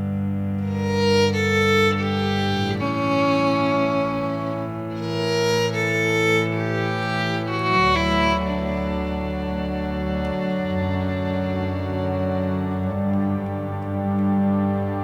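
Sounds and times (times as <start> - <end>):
slow bowed string music: 0.0 - 15.0.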